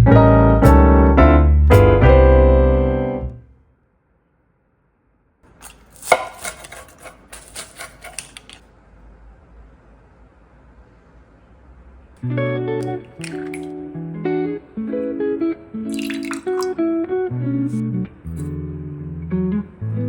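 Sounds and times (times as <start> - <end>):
piano music: 0.0 - 3.4
light clicks and knocks of kitchen work: 5.5 - 8.7.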